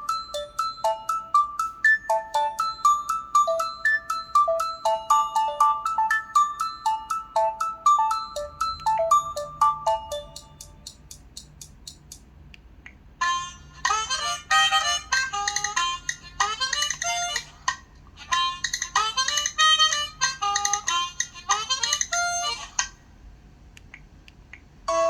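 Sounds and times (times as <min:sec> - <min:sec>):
jazz alarm tone melody: 0:00.0 - 0:10.6.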